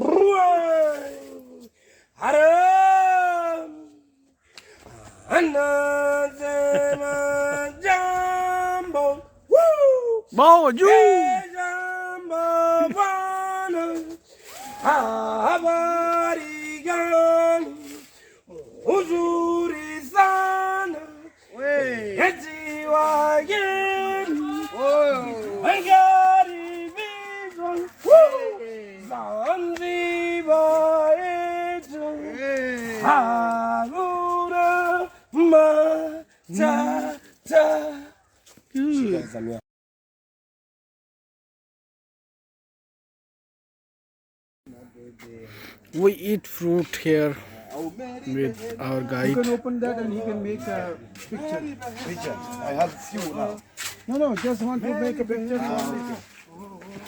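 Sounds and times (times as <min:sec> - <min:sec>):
person singing unaccompanied: 0:05.2 - 0:09.3, 0:10.4 - 0:38.1, 0:46.0 - 0:57.0.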